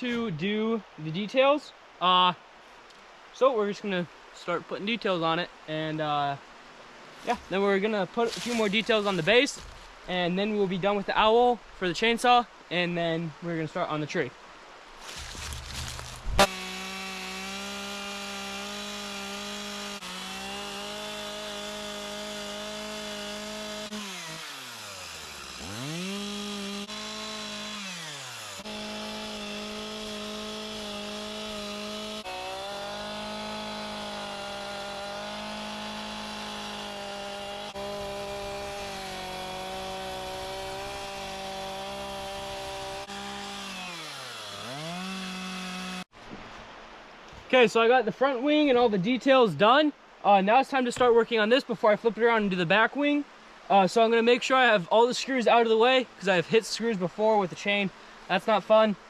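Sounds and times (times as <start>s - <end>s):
chainsaw cutting wood: 8.3s - 9.9s, 15.0s - 46.1s.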